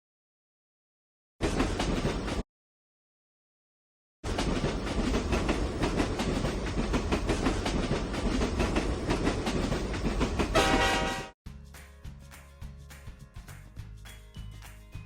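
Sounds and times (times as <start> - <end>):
train rumbling with wheel clatter: 1.4 - 2.4, 4.2 - 11.4.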